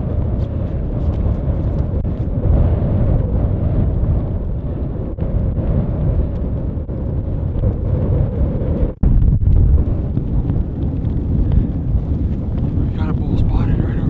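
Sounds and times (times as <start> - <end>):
strong wind buffeting microphone: 0.0 - 14.0.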